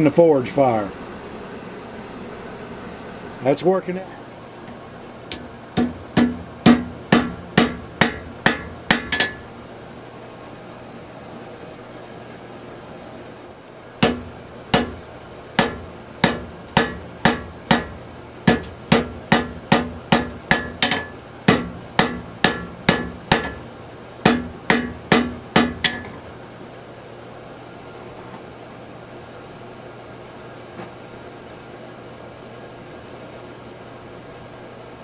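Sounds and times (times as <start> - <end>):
hammer ringing on anvil: 5.8 - 9.5, 15.6 - 23.6, 24.3 - 26.1.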